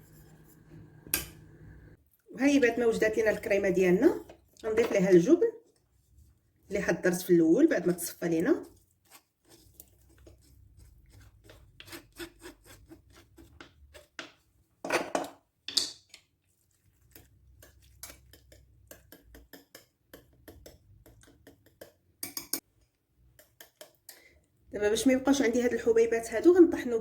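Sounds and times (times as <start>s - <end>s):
spoon scraping and tapping in a pot: 0.0s - 1.5s, 8.0s - 14.4s, 17.0s - 24.3s.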